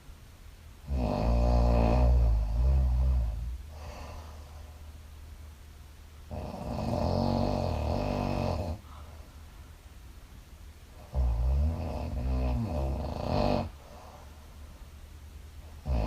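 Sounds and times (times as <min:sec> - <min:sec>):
woman snoring: 0:00.9 - 0:04.2, 0:06.3 - 0:08.8, 0:11.1 - 0:13.8.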